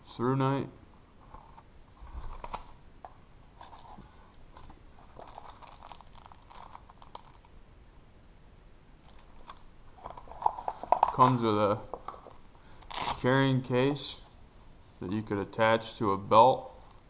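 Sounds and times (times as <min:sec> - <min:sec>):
paper and packaging rustling: 0:01.3 - 0:02.8, 0:03.6 - 0:07.5, 0:09.0 - 0:13.2.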